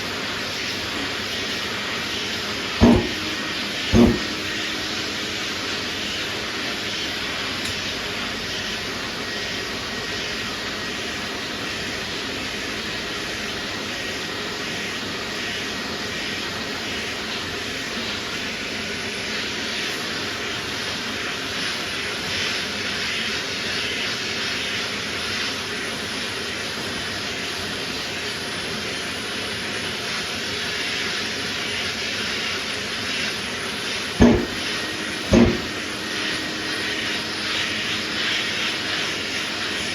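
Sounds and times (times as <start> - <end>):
short knocks: 2.8 - 3.3, 3.9 - 4.4, 34.2 - 34.7, 35.3 - 35.8.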